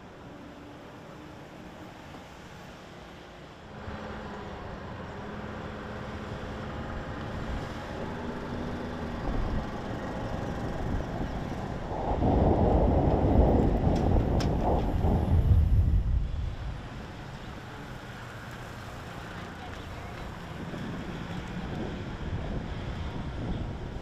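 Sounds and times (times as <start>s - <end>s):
vehicle engine humming: 3.7s - 24.0s.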